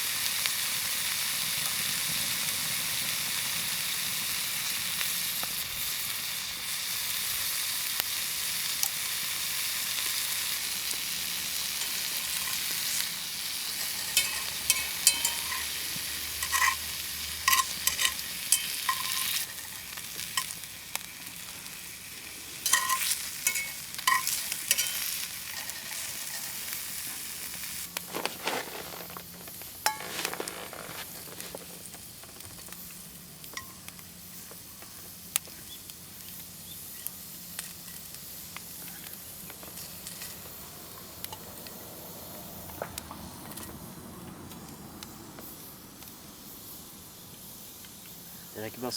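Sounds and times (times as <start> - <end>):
meat sizzling over a fire: 0.0 - 48.9
sharp metallic clinks: 13.8 - 16.9, 17.5 - 19.7, 22.6 - 26.4.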